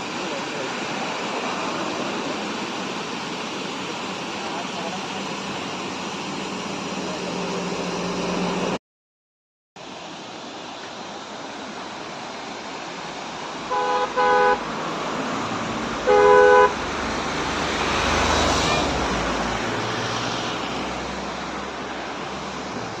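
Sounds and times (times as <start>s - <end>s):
passing traffic: 0.0s - 8.8s, 11.7s - 23.0s
waterfall rushing: 0.0s - 8.8s, 9.8s - 23.0s
vehicle horn honking: 13.7s - 14.6s, 16.0s - 16.8s.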